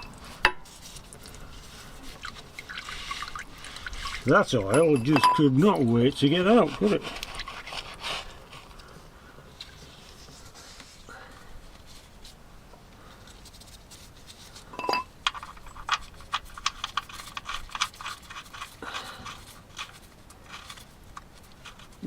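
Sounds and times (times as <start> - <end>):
metal tools clicking and tapping: 4.6 - 5.8
metallic clink: 4.7 - 5.5.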